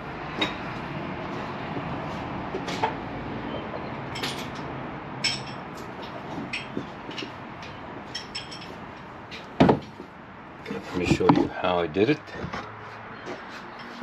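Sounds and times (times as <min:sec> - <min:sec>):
steady background hum: 0:00.0 - 0:14.0
light metallic clicks and clinks: 0:04.1 - 0:09.1.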